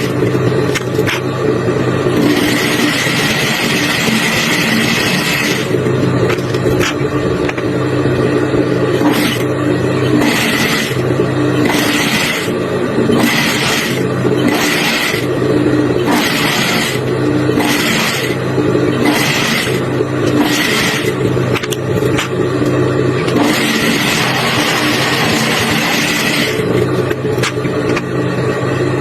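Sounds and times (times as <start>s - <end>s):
factory machinery hum: 0.0s - 29.0s.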